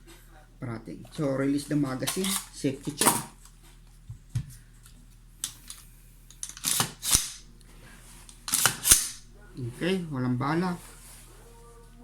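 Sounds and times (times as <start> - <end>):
rifle action metallic clicks: 6.4 - 7.5, 8.5 - 9.3.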